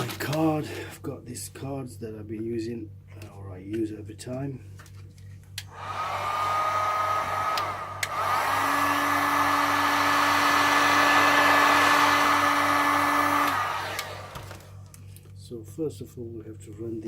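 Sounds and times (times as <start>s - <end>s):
heat gun blowing: 5.7s - 14.9s
heat gun clicks: 7.4s - 9.2s, 11.8s - 14.8s.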